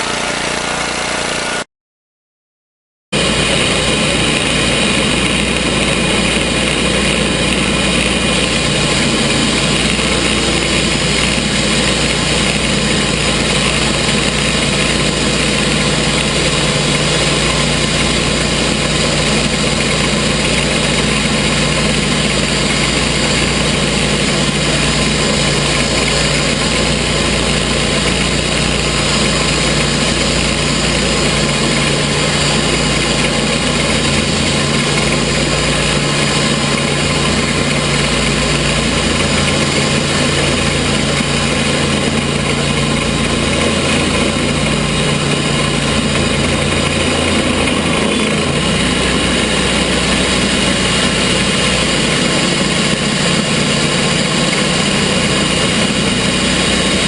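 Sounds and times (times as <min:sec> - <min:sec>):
sawmill gas engine running: 0:00.0 - 0:01.7, 0:03.1 - 0:57.0.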